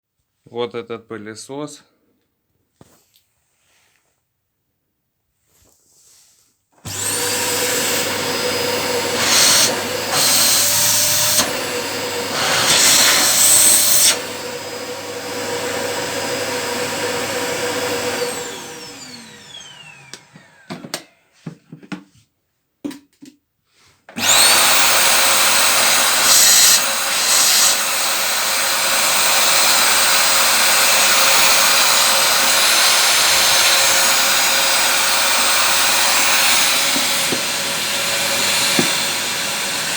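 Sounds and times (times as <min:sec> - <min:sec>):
vacuum cleaner motor whine: 0:06.8 - 0:21.4, 0:24.2 - 0:39.9.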